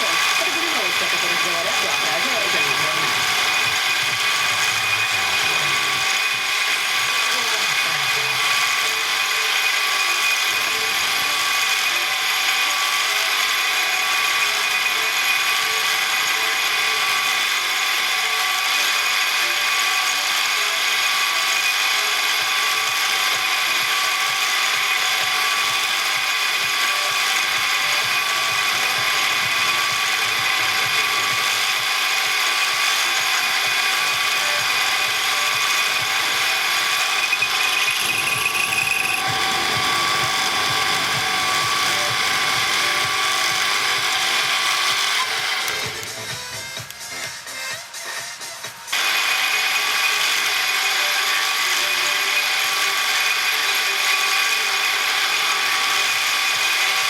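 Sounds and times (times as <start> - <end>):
machine tool gear whine: 0.0 - 57.0.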